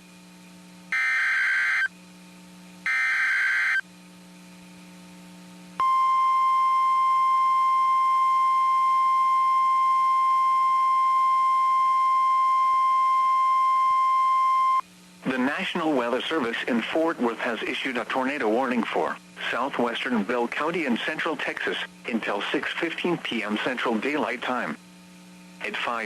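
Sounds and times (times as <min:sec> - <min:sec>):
steady alarm tone: 0:00.9 - 0:01.9, 0:02.8 - 0:03.8
harsh buzzy data bursts: 0:01.0 - 0:01.9, 0:02.9 - 0:03.8.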